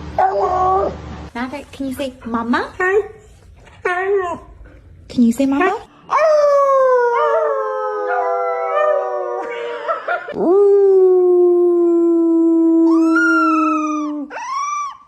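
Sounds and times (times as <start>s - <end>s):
dog howling: 6.1s - 9.6s, 10.4s - 15.0s.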